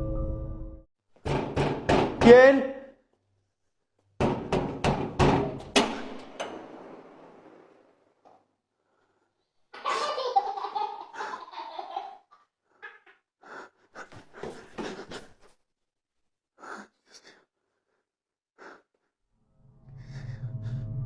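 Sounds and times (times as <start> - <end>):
child laughing: 9.8 - 13.3.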